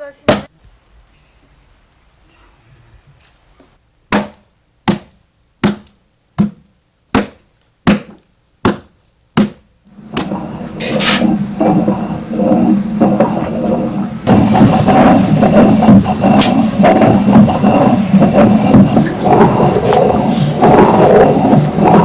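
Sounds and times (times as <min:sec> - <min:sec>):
loud mixed noise: 0:10.0 - 0:22.0.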